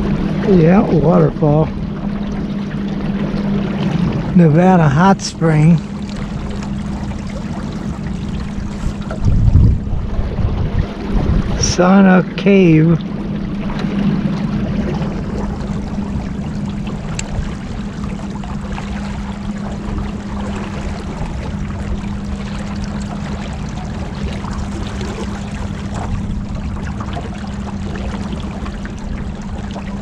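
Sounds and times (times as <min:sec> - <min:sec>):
boat motor humming: 0:00.0 - 0:30.0
water splashing along hull: 0:00.0 - 0:30.0.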